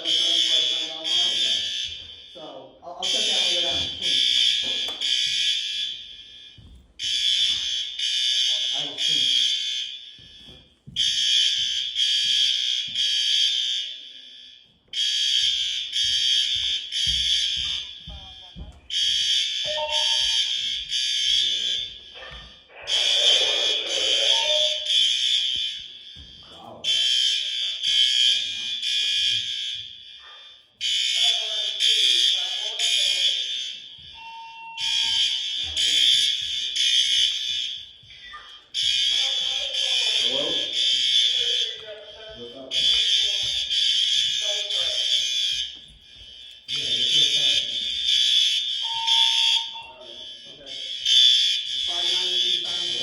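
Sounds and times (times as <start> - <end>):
fire alarm horns blaring: 0.0 - 53.0.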